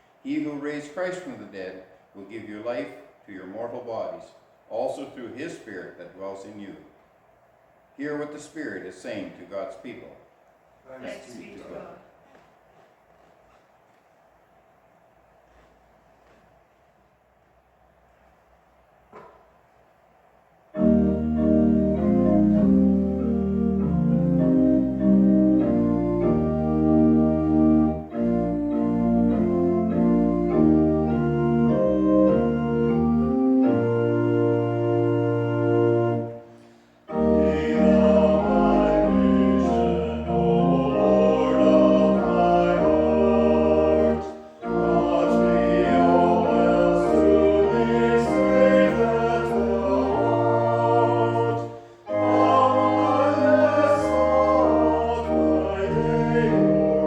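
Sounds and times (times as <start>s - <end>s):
organ playing hymn chords: 20.7s - 57.0s.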